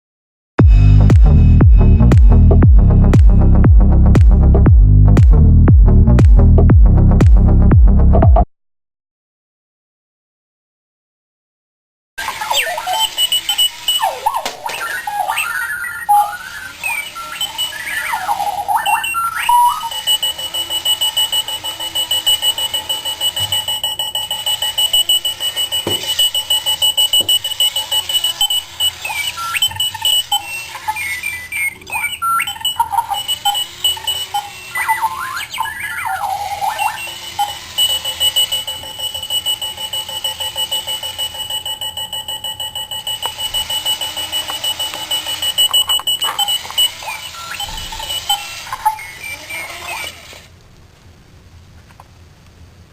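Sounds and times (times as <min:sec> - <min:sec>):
alarm clock beeping and chirping: 0:12.2 - 0:50.5.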